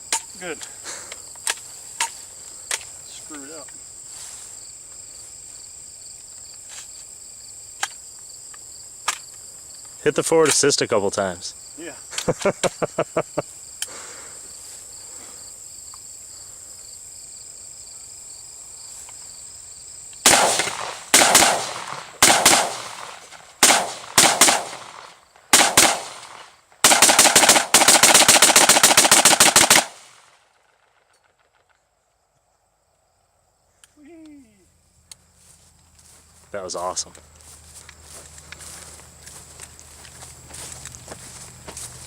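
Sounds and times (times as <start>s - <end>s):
insects chirping: 0.0s - 42.0s
rifle shots ringing out: 20.2s - 30.3s.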